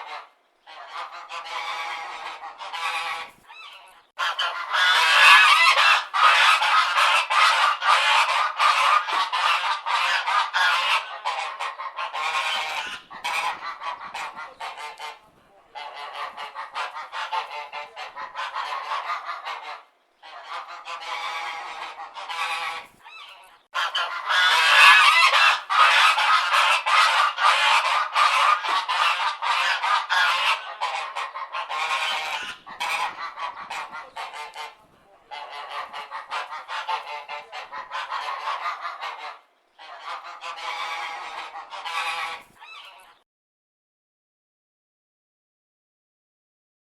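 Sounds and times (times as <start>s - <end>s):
geese honking: 0.0s - 43.2s.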